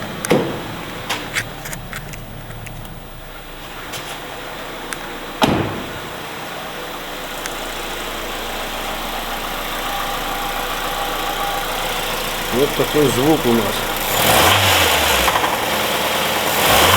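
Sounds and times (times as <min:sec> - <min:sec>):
engine bearing knock: 0:00.0 - 0:01.5
car engine idling: 0:00.0 - 0:16.9
sharp thump: 0:05.4 - 0:06.0.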